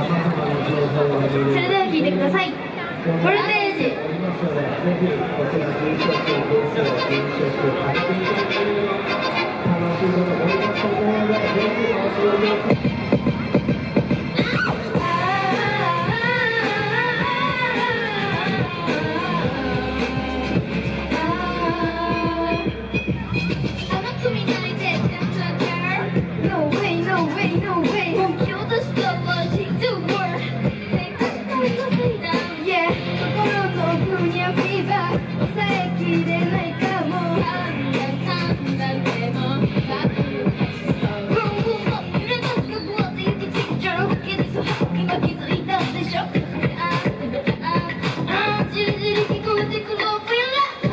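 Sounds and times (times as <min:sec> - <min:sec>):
live pop rock song with singing: 0:14.4 - 0:23.1, 0:23.8 - 0:50.9.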